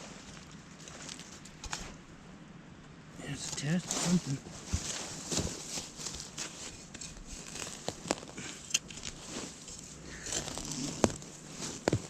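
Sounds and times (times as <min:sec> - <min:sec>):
soil and roots scraping: 0:03.2 - 0:12.0.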